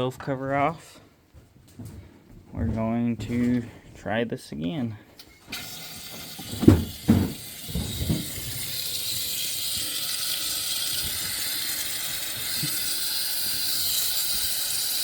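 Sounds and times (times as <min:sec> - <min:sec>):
compressed air hissing: 0:05.6 - 0:15.0
low thumps: 0:06.4 - 0:09.1.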